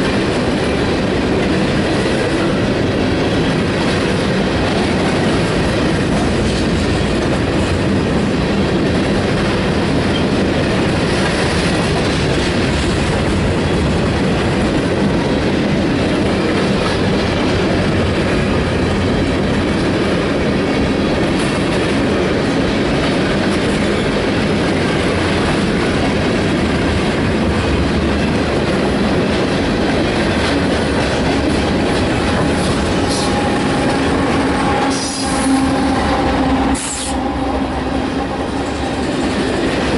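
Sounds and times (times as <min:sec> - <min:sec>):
freight cars rumbling past: 0:30.8 - 0:39.9.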